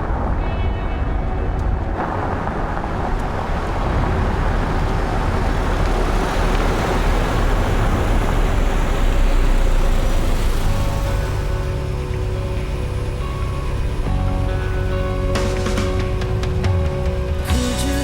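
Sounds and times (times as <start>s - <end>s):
vehicle engine and road noise: 0.0s - 18.0s.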